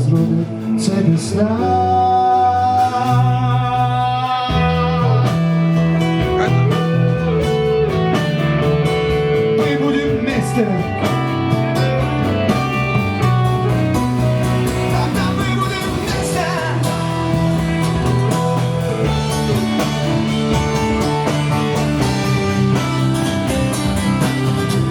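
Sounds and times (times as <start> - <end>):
rock band playing: 0.0 - 24.9
sliding lead guitar line: 0.0 - 24.9.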